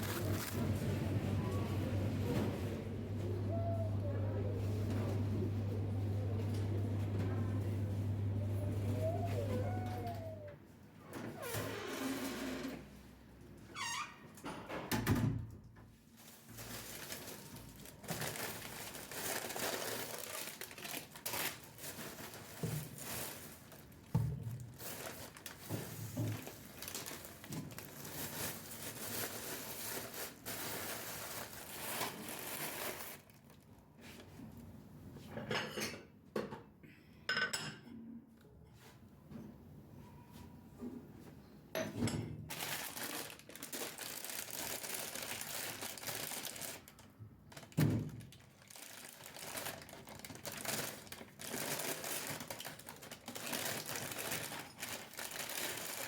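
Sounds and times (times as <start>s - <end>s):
rustling: 0.0s - 0.8s
dishes and cutlery clinking: 35.4s - 36.1s.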